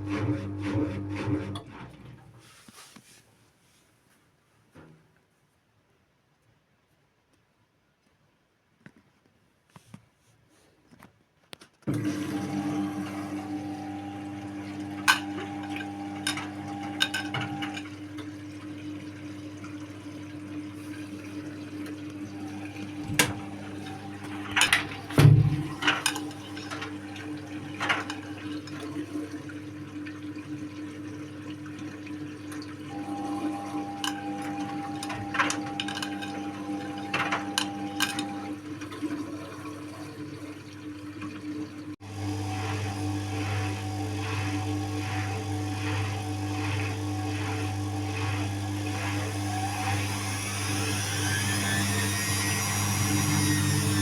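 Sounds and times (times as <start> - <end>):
water moving in washing machine: 0.0 - 3.2, 11.8 - 54.0
washing machine mechanical hum: 0.0 - 3.9, 11.8 - 54.0
washing machine clicks and knocks: 24.2 - 26.9.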